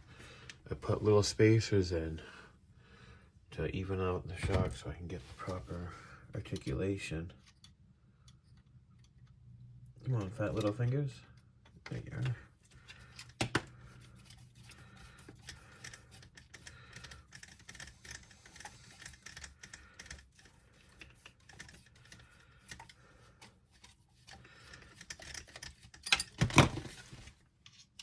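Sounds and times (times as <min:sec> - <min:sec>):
small metal clicks and ticks: 0:15.3 - 0:26.4
metal parts clattering: 0:25.0 - 0:27.2.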